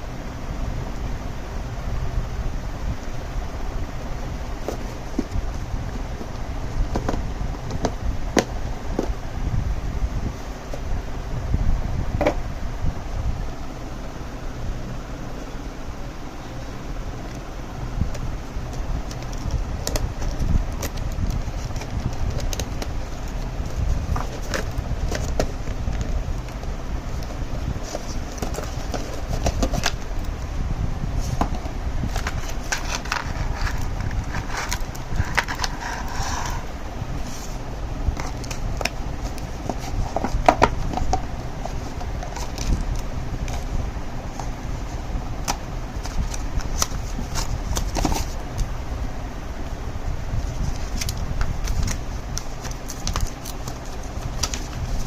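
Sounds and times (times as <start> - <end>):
steady low rumble: 0.0 - 55.0
packaging clicks and rustles: 18.1 - 30.4, 31.2 - 36.7, 38.1 - 43.7, 45.4 - 48.7, 50.4 - 55.0.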